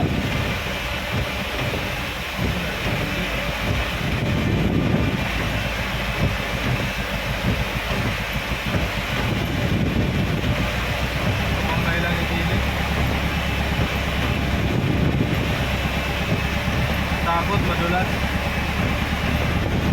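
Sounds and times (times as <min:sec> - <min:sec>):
heavy rain: 0:00.0 - 0:19.9
vehicle engine and tyres on wet road: 0:00.0 - 0:19.9
wind noise: 0:00.0 - 0:19.9.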